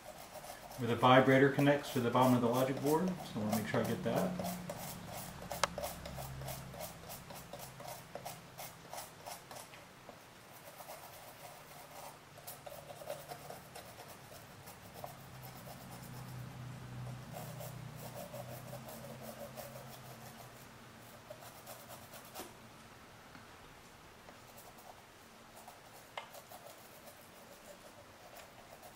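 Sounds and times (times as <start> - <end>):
small brush scrubbing: 0.0 - 9.8, 10.5 - 22.5, 24.4 - 28.9.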